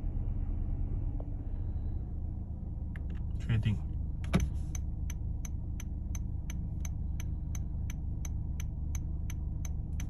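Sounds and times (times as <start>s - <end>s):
low cabin hum: 0.0s - 10.0s
turn signal ticking: 4.3s - 10.0s.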